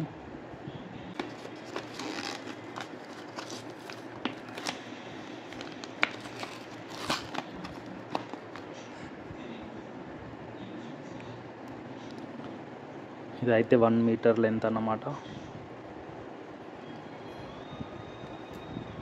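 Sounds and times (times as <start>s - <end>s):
packaging crinkling: 1.2s - 8.8s.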